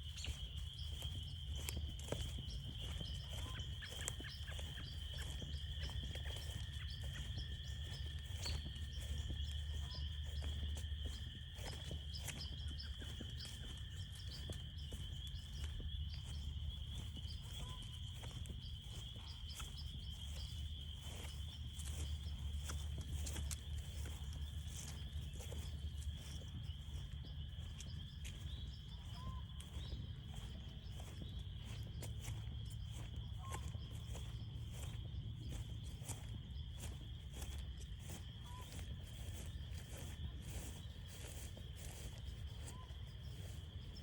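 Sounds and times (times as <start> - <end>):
frogs trilling: 0.0 - 44.0
light footsteps on a trail: 0.0 - 44.0.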